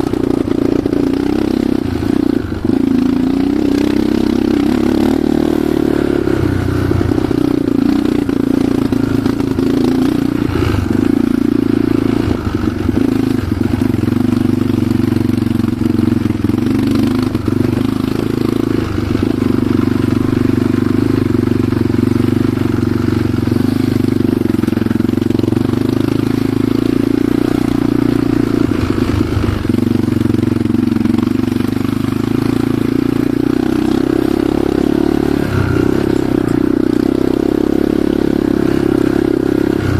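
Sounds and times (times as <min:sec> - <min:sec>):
bike rattling over rough ground: 0:00.0 - 0:39.9
motorcycle engine running: 0:00.0 - 0:39.9.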